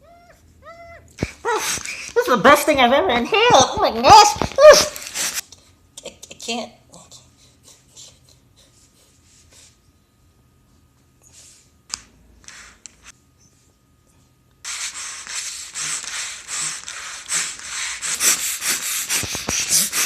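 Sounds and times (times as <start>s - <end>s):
rapid rubbing or scraping: 14.7s - 20.0s.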